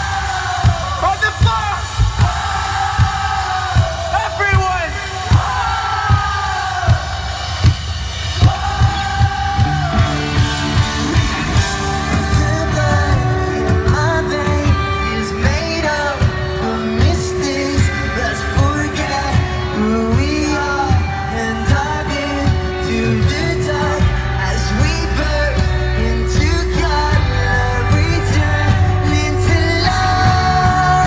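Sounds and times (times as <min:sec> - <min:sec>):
pop-rock band playing: 0:00.0 - 0:31.0
person singing: 0:08.4 - 0:31.0.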